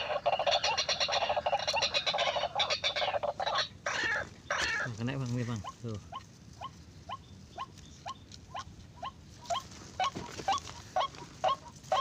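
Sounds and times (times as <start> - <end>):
waterhen calling: 0.0 - 12.0.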